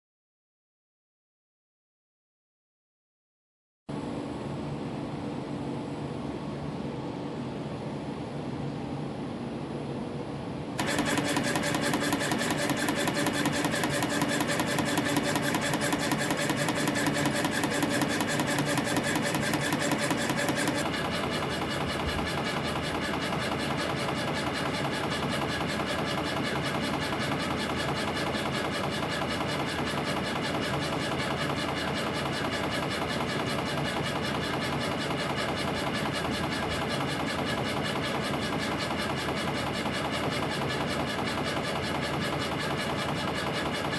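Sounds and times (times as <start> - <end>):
spring coiling machine clattering: 10.8 - 43.9.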